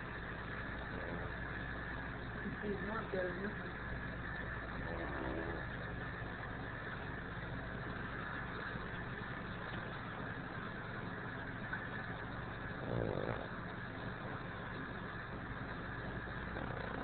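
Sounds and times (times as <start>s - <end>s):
dog snoring: 0.8s - 1.4s, 4.7s - 5.7s, 12.7s - 13.6s, 16.4s - 17.0s.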